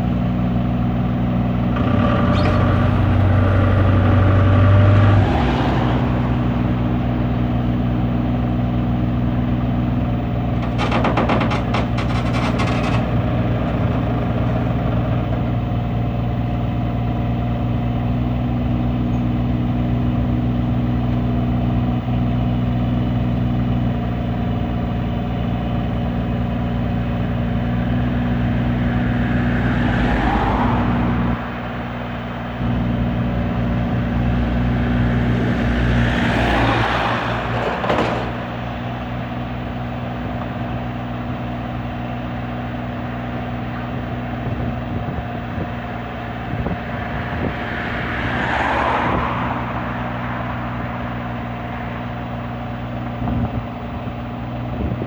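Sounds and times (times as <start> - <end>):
excavator diesel engine running: 0.0 - 55.0.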